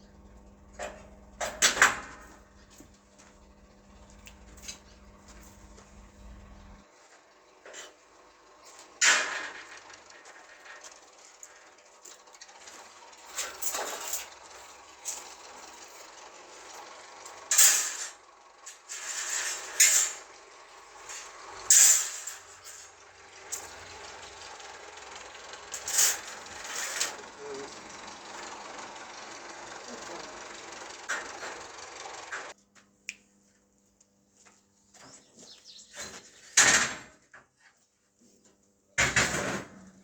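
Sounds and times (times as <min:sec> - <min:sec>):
metal scraping clatter: 0:00.2 - 0:06.8, 0:07.5 - 0:32.5
metal parts clanking: 0:08.6 - 0:16.0, 0:16.7 - 0:24.2, 0:25.6 - 0:27.5.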